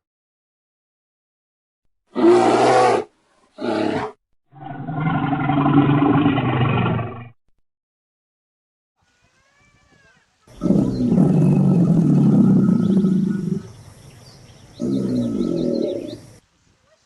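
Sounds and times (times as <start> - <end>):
big cat roaring: 2.1 - 7.4, 10.5 - 13.8, 14.8 - 16.2.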